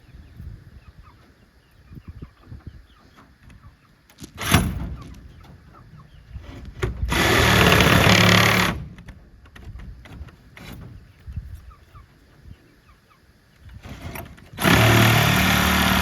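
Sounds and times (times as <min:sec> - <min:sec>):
power drill driving screw: 0:07.1 - 0:08.8, 0:13.9 - 0:16.0.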